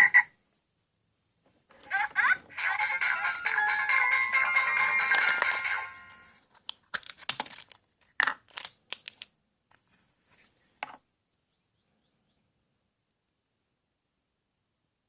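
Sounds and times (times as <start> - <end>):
crinkling rustling noises: 6.3 - 10.9.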